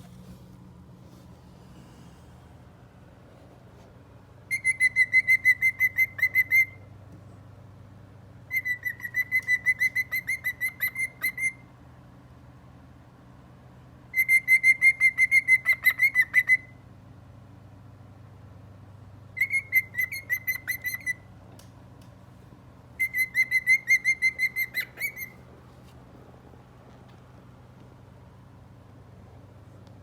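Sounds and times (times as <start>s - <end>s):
cockatiel whistling: 4.5s - 6.8s, 8.5s - 11.6s, 14.1s - 16.7s, 19.4s - 21.2s, 23.0s - 25.4s.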